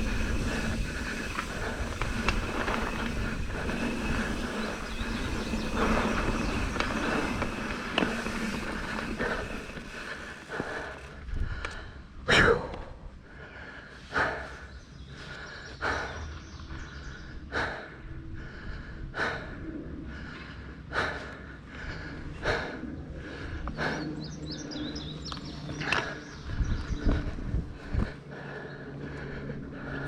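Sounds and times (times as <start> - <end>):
steady background noise: 0.0 - 30.0
person breathing hard: 8.0 - 12.2, 17.3 - 24.2, 27.2 - 30.0.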